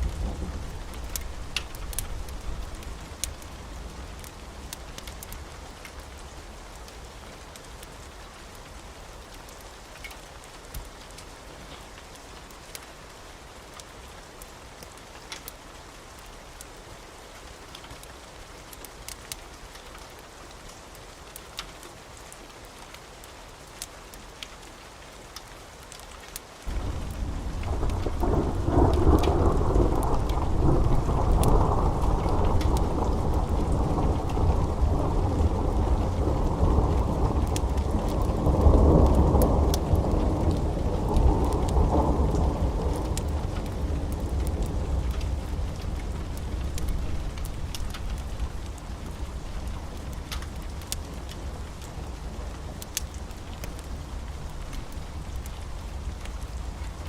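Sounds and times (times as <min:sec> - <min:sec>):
low thunder rumble: 0:00.0 - 0:04.7, 0:26.7 - 0:57.0
wood fire crackling: 0:00.0 - 0:16.7, 0:17.6 - 0:57.0
steady rain: 0:00.0 - 0:57.0.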